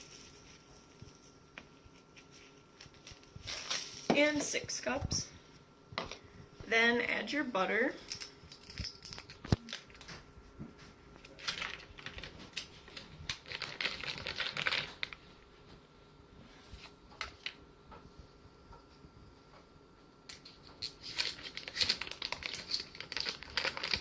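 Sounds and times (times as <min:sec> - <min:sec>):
paper wrappers crinkling: 0:00.0 - 0:04.1, 0:08.0 - 0:10.2, 0:11.2 - 0:15.2, 0:20.3 - 0:24.0.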